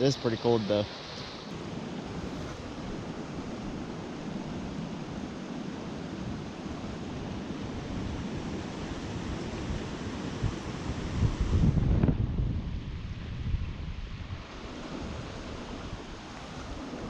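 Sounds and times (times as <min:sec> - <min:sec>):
stream rushing over rocks: 0:14.4 - 0:17.0.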